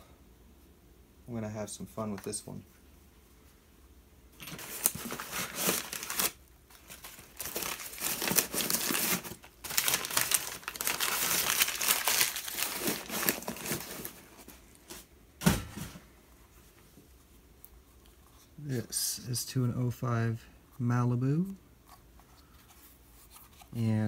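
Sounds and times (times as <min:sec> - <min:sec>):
plastic wrapping crinkling: 0:04.4 - 0:15.1
thump: 0:15.4 - 0:16.0.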